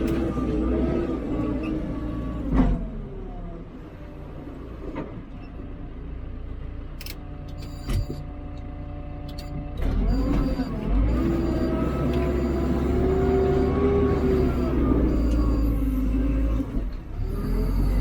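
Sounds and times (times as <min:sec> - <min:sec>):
diesel engine running: 0:05.6 - 0:18.0.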